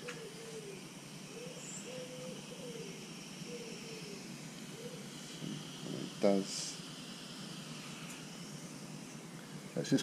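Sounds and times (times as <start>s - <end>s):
bird calling in low notes: 0.0s - 6.2s
steady hiss: 0.0s - 10.0s.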